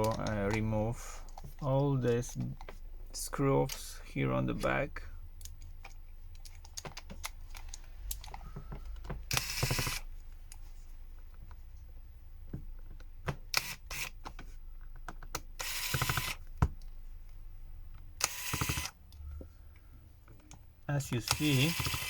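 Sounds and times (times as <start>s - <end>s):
screwdriver rapid clicking: 18.2s - 19.0s, 21.2s - 22.0s.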